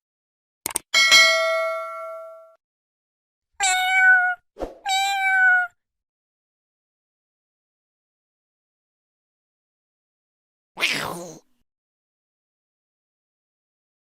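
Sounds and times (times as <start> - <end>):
metallic ding: 1.0 - 2.6
cat meowing: 3.6 - 5.8, 10.8 - 11.4.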